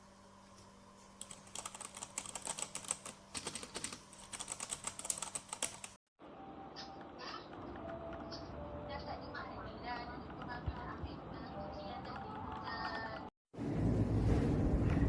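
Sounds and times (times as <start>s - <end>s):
mechanical keyboard typing: 1.2s - 6.0s.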